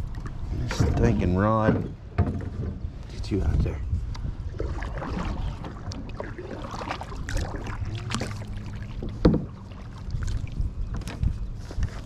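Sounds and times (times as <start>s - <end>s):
knocks and clicks of kayak gear: 0.2s - 3.1s, 9.0s - 9.6s, 10.9s - 12.0s.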